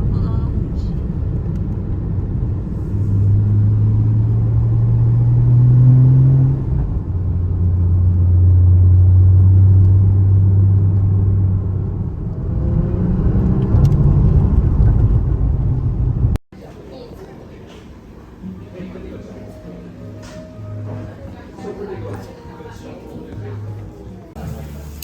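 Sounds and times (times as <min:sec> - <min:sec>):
car engine hum: 0:00.0 - 0:16.4
road rumble inside car: 0:00.0 - 0:16.4.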